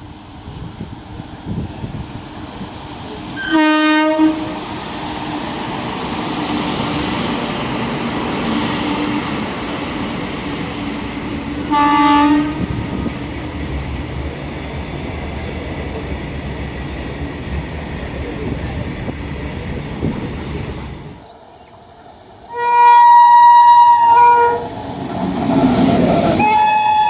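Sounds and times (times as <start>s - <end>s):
passing train rumble: 0.0s - 27.0s
train horn blasts: 3.4s - 4.6s, 11.6s - 12.9s, 22.5s - 24.7s, 26.4s - 27.0s.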